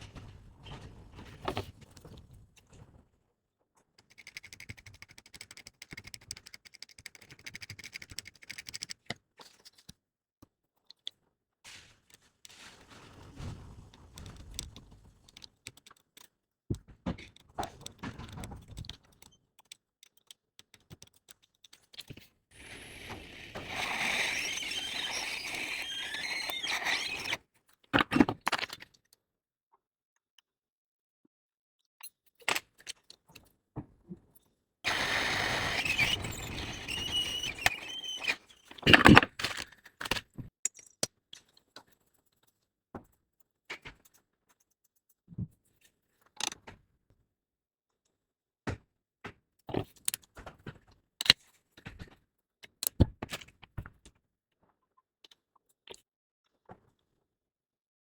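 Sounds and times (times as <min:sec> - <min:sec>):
air hissing: 0:22.6 - 0:27.4, 0:34.9 - 0:38.4
small tools scraping circuit board: 0:22.6 - 0:27.4, 0:34.9 - 0:39.3.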